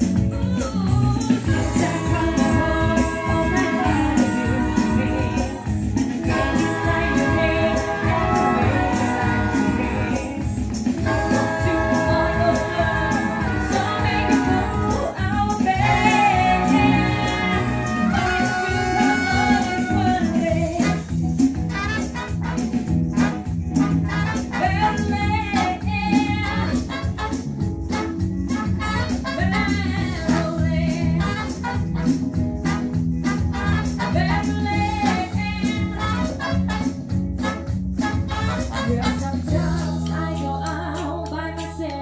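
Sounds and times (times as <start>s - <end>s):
drums: 0.0s - 40.6s
live band playing: 0.0s - 41.7s
jingling percussion: 0.0s - 42.0s.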